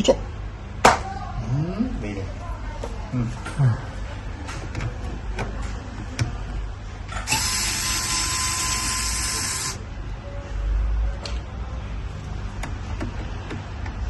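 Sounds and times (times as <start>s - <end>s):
electric screwdriver whirring: 7.3s - 9.8s.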